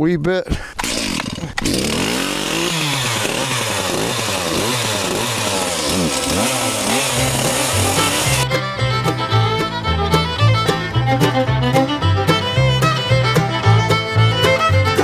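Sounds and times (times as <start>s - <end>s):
chainsaw revving while cutting: 0.5s - 8.5s.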